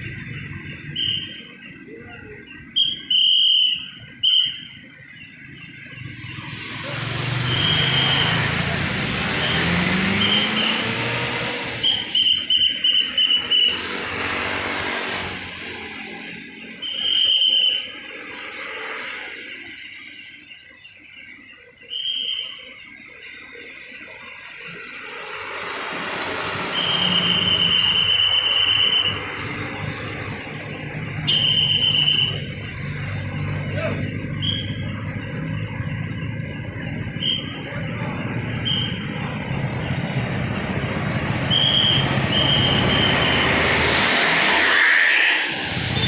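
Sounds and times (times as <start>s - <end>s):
vehicle traffic: 0.0s - 2.7s, 4.0s - 19.6s, 24.2s - 46.0s
traffic whistle blasts: 0.0s - 5.0s, 5.9s - 15.7s, 16.5s - 18.8s, 21.8s - 22.8s, 25.1s - 35.1s, 37.0s - 46.0s
rain hissing on the road: 24.7s - 33.6s.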